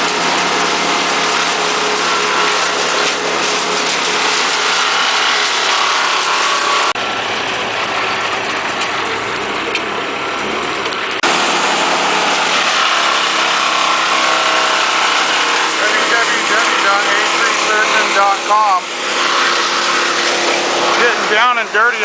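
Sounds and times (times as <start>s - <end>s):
work machinery engines running: 0.0s - 22.0s.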